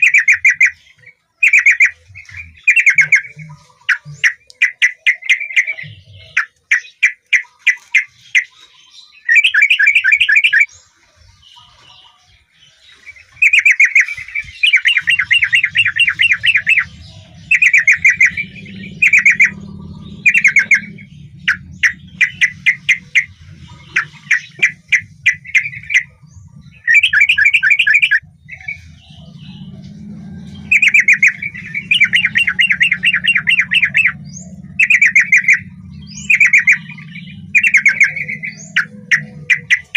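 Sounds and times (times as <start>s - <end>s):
bird singing fast repeated notes: 0.0s - 11.8s, 12.4s - 39.9s
steady low hum: 14.1s - 39.9s.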